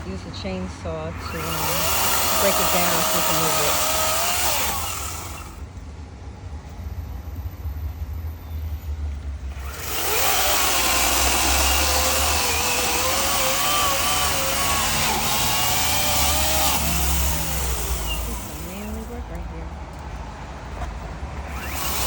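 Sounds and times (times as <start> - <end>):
chainsaw running: 1.2 - 5.6, 9.5 - 19.4, 21.4 - 22.0.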